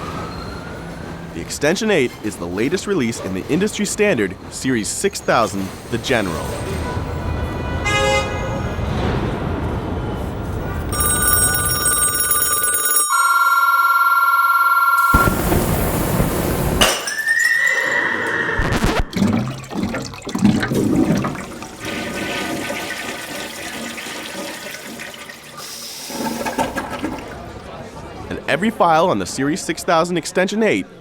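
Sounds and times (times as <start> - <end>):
ringing tones: 10.9 - 15.5
brief arching tone: 13.1 - 16.3.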